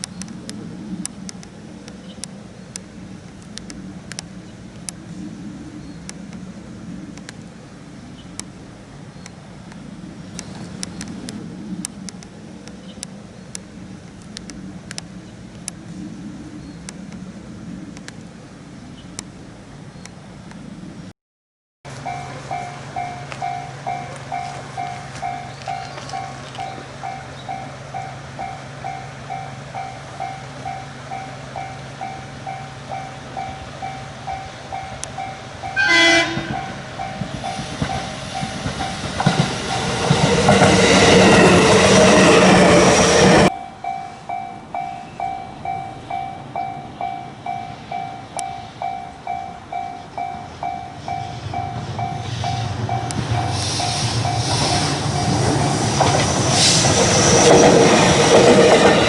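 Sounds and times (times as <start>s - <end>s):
low train rumble: 0.0s - 21.1s, 21.9s - 59.0s
train passing over crossing: 0.0s - 21.1s, 21.9s - 59.0s
level-crossing bell dinging: 21.9s - 38.6s, 43.5s - 55.4s
train horn blast: 35.6s - 37.6s.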